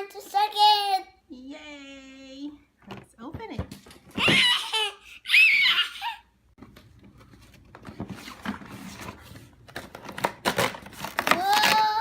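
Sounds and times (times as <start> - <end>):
cardboard packaging rustling: 6.6 - 12.0.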